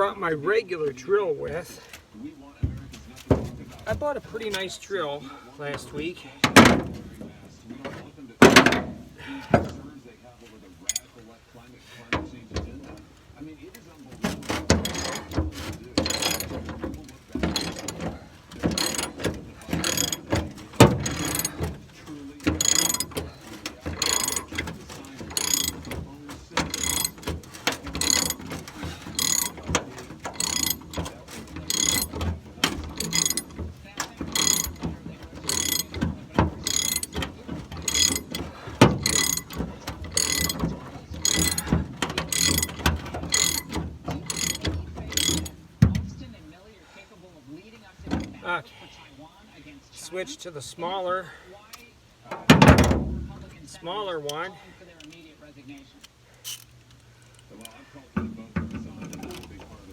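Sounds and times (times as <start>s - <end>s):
ratchet wrench clicking: 14.2s - 45.6s, 56.0s - 57.7s.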